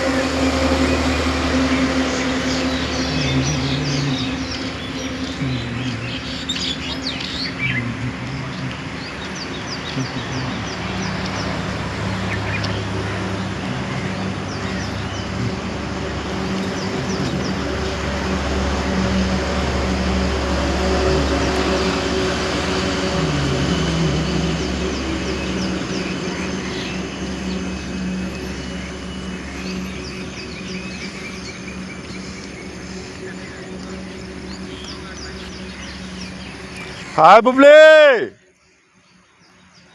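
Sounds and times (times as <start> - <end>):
low hum: 0.0 - 37.1
small birds chirping: 0.0 - 37.8.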